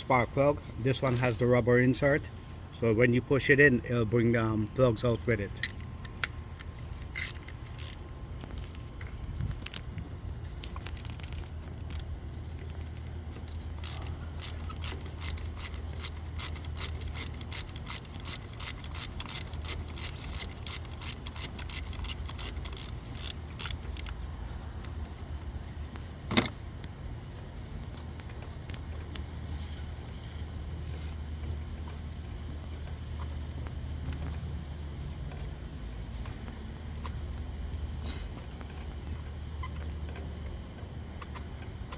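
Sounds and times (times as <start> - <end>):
steady low hum: 0.0 - 41.9
ratchet wrench clicking: 7.1 - 8.0, 13.3 - 24.2.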